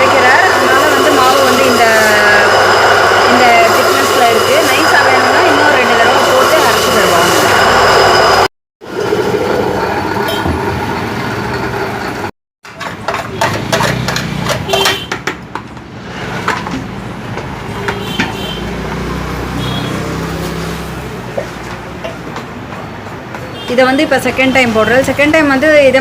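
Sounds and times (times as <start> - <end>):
grinding mill motor humming: 0.0 - 12.3.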